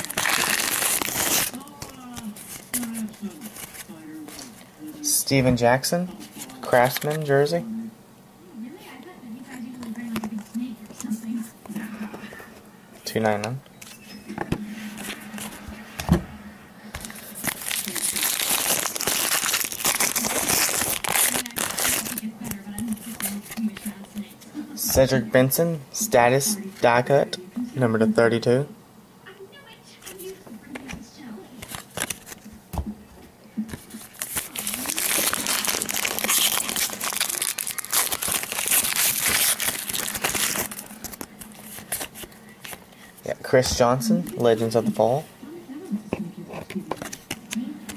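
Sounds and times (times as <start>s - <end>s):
foil wrapper crinkling: 0.0s - 4.6s, 17.0s - 24.0s, 31.6s - 32.5s, 33.7s - 43.0s.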